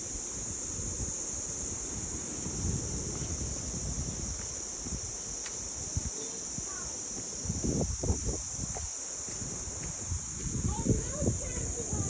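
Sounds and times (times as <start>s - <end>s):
high-pitched insect chorus: 0.0s - 12.0s
wind rumbling on microphone: 0.0s - 12.0s.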